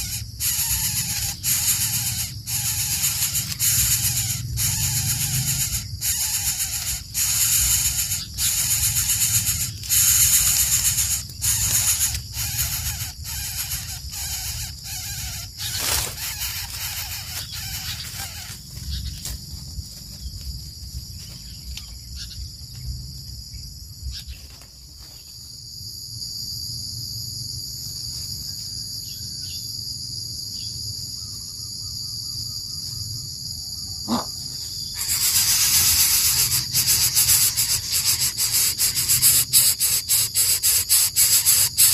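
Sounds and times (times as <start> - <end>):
bird harsh raspy hissing calls: 0.0 - 19.1, 34.0 - 41.9
high insect trill: 0.0 - 41.9.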